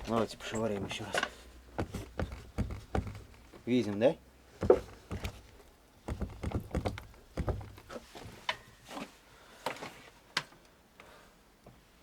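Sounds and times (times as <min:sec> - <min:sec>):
car door clunking in hinges: 0:04.6 - 0:08.0.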